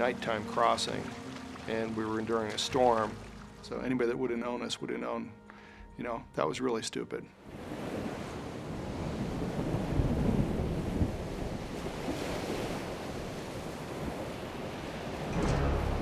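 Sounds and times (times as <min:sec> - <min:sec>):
waves breaking and surging: 0:00.0 - 0:03.8, 0:07.4 - 0:16.0
wind: 0:00.0 - 0:16.0.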